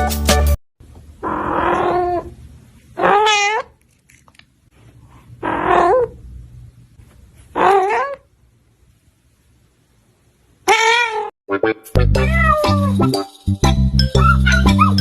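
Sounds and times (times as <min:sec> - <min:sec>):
pet animal crying out: 0:01.2 - 0:02.4, 0:03.0 - 0:03.8, 0:05.4 - 0:06.2, 0:07.6 - 0:08.3, 0:10.7 - 0:11.3, 0:12.2 - 0:13.0, 0:14.2 - 0:15.0.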